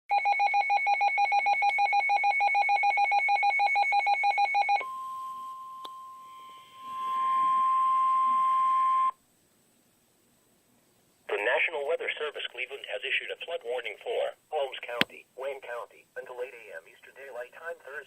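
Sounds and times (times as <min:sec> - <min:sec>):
steady warning alarm tone: 0:00.1 - 0:09.1.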